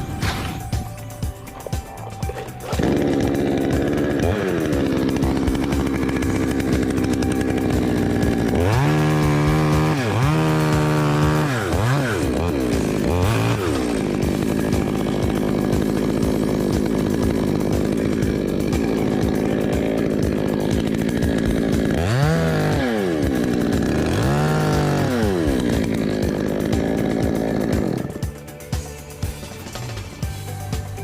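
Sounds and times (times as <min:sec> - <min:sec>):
chainsaw revving: 0:00.0 - 0:31.0.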